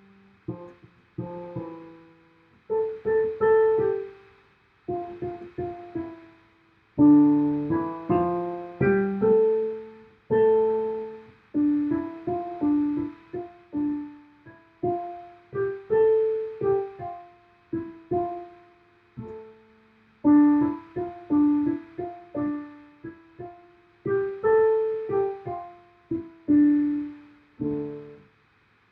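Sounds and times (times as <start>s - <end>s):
solo piano piece: 0.0s - 28.9s.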